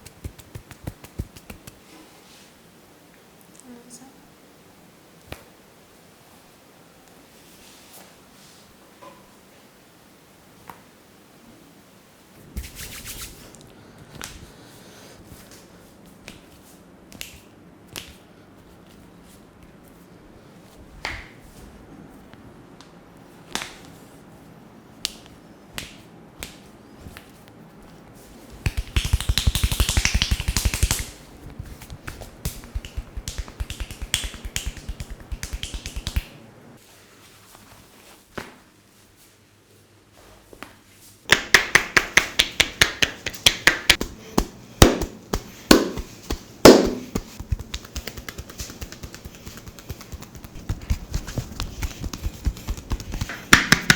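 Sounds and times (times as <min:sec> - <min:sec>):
rhythmic hand tapping: 0:00.0 - 0:01.8, 0:28.6 - 0:36.3, 0:41.3 - 0:53.9.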